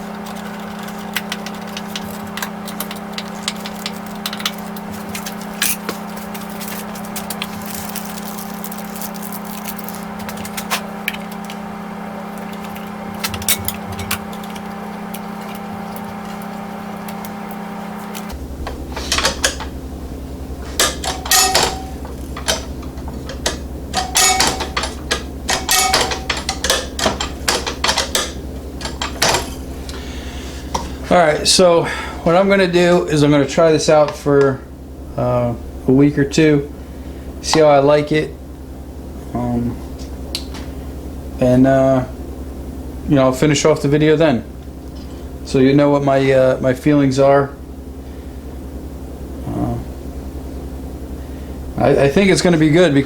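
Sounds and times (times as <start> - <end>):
metal tools clicking and knocking: 0.0 - 11.6, 12.3 - 17.3, 20.8 - 29.7
steady low hum: 0.0 - 53.0.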